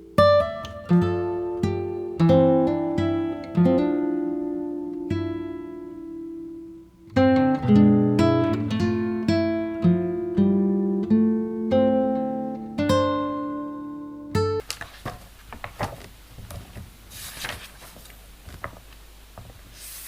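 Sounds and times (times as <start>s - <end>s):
acoustic guitar music: 0.0s - 14.6s.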